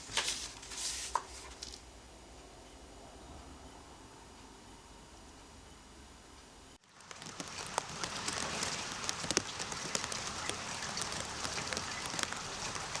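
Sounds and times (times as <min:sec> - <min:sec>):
steady rain: 0:06.8 - 0:13.0.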